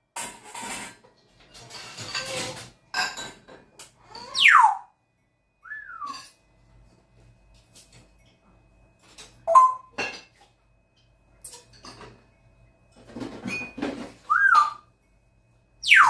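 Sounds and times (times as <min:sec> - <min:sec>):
parrot whistling: 0:04.1 - 0:04.9, 0:05.6 - 0:06.2, 0:09.5 - 0:09.9, 0:14.3 - 0:14.8.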